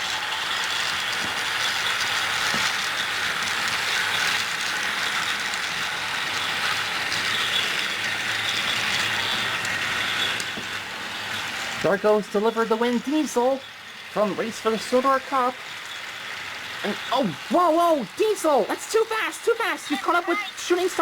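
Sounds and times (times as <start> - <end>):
plastic wheels rattling on track: 0.0 - 21.0
toy train motors whirring: 0.0 - 21.0.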